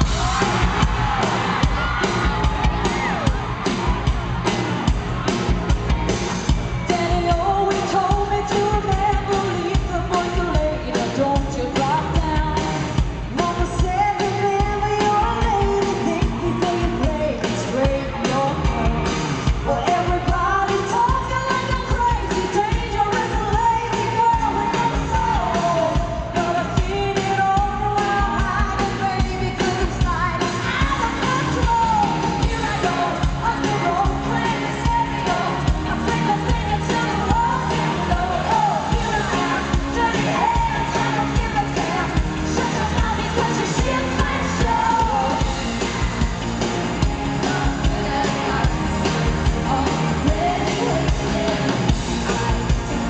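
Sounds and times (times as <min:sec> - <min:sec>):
live pop-rock band: 0:00.0 - 0:53.0
female group vocals singing: 0:31.0 - 0:45.5, 0:47.1 - 0:51.8.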